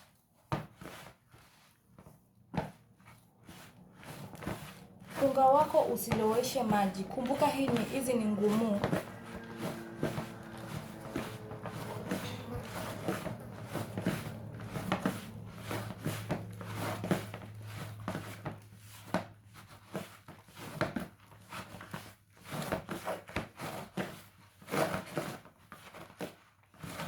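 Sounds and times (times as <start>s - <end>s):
hands kneading dough: 0.0s - 27.0s
low steady hum: 3.4s - 18.8s.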